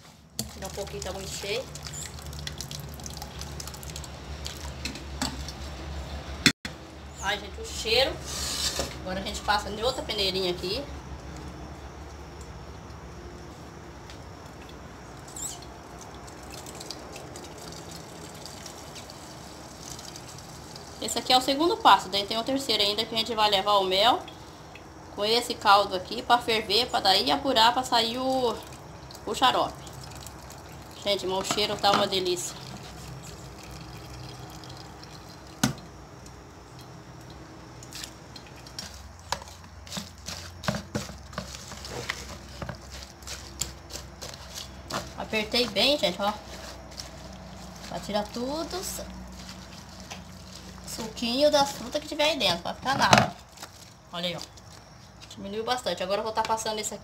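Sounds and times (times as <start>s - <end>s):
liquid trickling through sieve: 0.0s - 5.8s, 14.5s - 21.5s, 28.2s - 52.0s
fruit pulp squishing: 0.0s - 6.0s, 14.4s - 21.2s, 28.3s - 55.3s.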